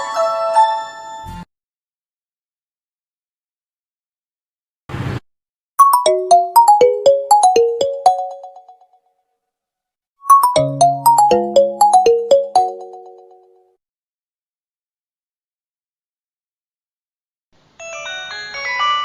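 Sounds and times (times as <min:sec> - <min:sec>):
phone ringtone melody: 0:05.8 - 0:08.8, 0:10.2 - 0:13.6.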